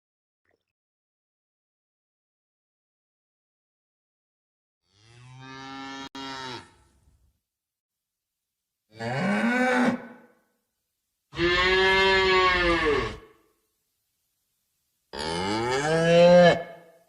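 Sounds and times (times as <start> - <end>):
cow mooing: 4.9 - 6.8, 11.4 - 13.2, 15.1 - 16.8.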